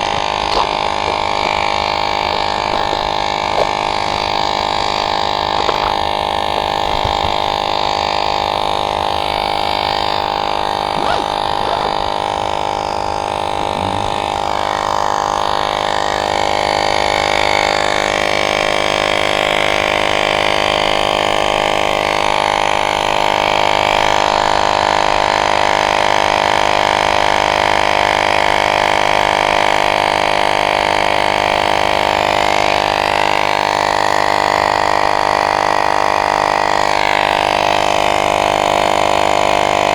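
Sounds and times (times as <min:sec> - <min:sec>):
electric tire inflator droning: 0:00.0 - 0:39.9.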